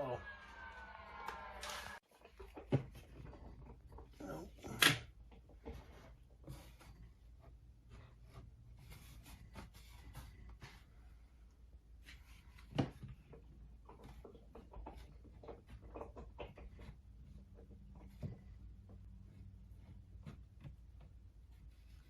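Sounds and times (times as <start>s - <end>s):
hands scraping wooden planks: 5.4s - 22.0s.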